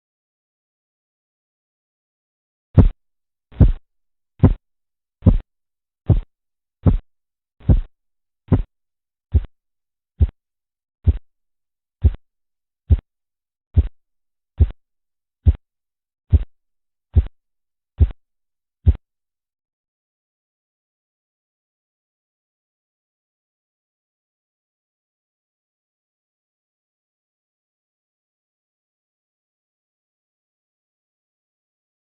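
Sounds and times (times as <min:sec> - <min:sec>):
pulse taps through a stethoscope: 0:02.8 - 0:03.8, 0:04.4 - 0:04.6, 0:05.2 - 0:05.4, 0:06.1 - 0:07.0, 0:07.6 - 0:07.9, 0:08.5 - 0:08.7, 0:09.3 - 0:09.5, 0:11.0 - 0:11.3, 0:12.0 - 0:12.2, 0:12.9 - 0:13.1, 0:13.8 - 0:14.0, 0:14.6 - 0:14.8, 0:15.4 - 0:15.6, 0:16.3 - 0:16.5, 0:17.2 - 0:17.4, 0:18.0 - 0:18.2.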